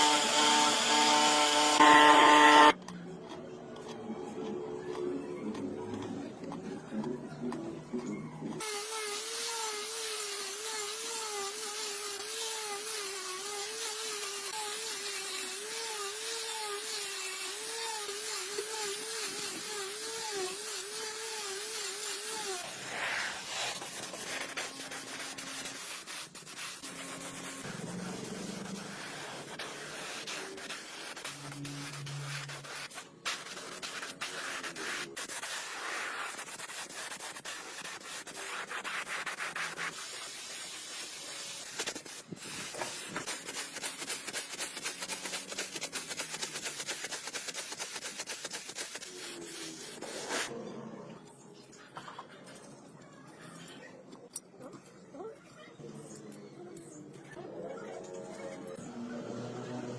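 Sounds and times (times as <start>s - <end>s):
power tool motor whining: 0.0s - 2.8s.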